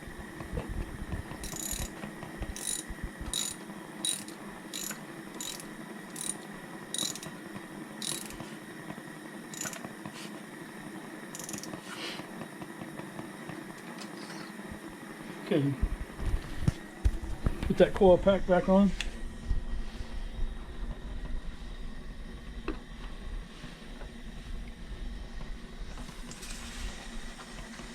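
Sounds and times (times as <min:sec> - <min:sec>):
socket ratchet clicking: 0:01.4 - 0:01.9, 0:02.6 - 0:06.4, 0:07.0 - 0:07.3, 0:08.0 - 0:08.4, 0:09.6 - 0:09.8, 0:11.4 - 0:11.7.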